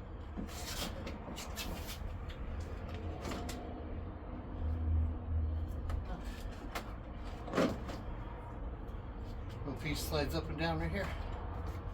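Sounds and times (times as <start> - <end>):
car body parts clicking and scraping: 0.0 - 3.8, 5.7 - 9.6.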